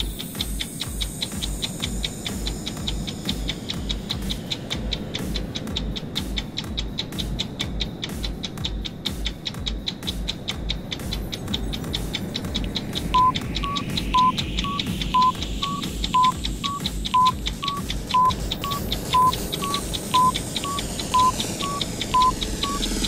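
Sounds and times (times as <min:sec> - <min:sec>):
low pulsing beat: 0:00.0 - 0:23.0
rapid clock ticking: 0:00.0 - 0:23.0
short electronic beeps: 0:13.1 - 0:23.0.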